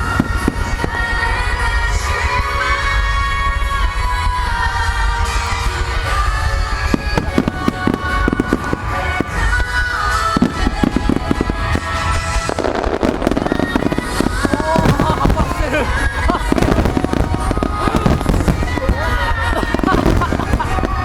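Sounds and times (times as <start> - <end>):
firework shells bursting and crackling: 0.0 - 21.0
fireworks display music: 0.0 - 21.0.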